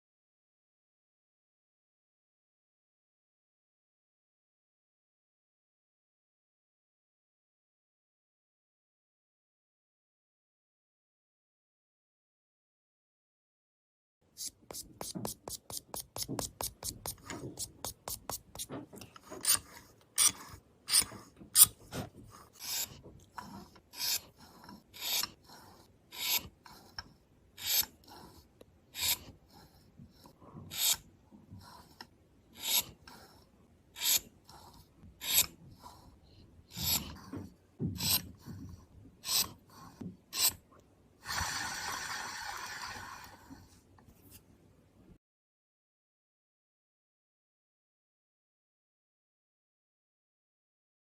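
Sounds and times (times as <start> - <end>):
rasping scraping strokes: 14.4 - 43.8.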